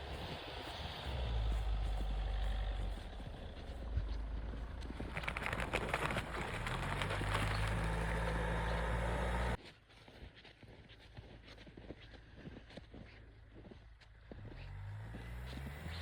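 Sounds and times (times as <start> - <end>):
car engine running: 0.0 - 9.6
engine clattering clicks: 1.6 - 9.6.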